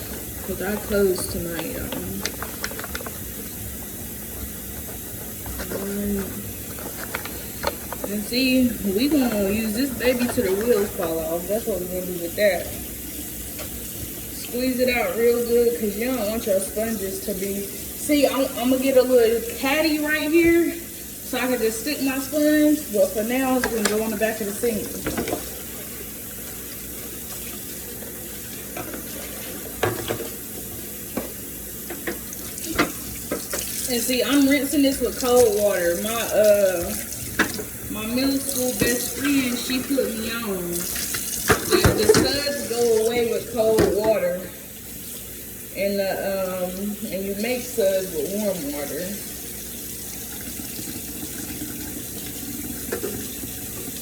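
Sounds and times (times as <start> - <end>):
tap running into sink: 0.0 - 8.4, 24.7 - 25.7, 27.2 - 40.0, 40.7 - 44.4, 50.2 - 54.0
pan being washed: 0.0 - 54.0
dishes knocking: 41.4 - 42.6.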